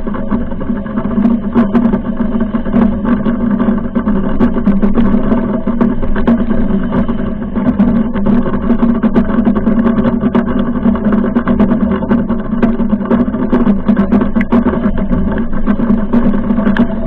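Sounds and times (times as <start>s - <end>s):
loud steady hum with tones: 0.0s - 17.0s.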